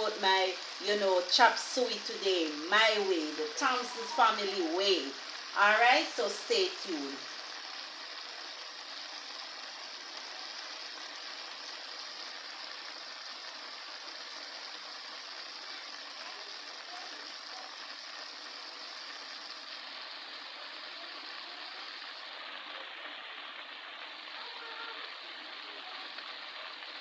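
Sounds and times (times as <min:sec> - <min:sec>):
vegetables sizzling in a pot: 0:00.0 - 0:27.0.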